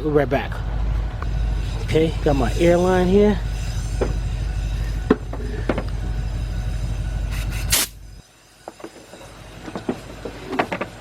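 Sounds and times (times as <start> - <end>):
steady low hum: 0.0 - 11.0
air blow gun hiss: 1.4 - 8.0.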